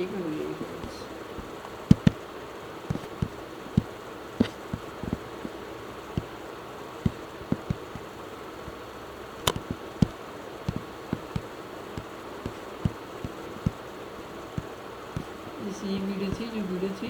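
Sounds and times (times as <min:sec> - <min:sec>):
low electrical buzz: 0:00.0 - 0:17.0
soft thumps of desk handling: 0:00.8 - 0:02.2, 0:02.9 - 0:05.5, 0:09.5 - 0:13.8.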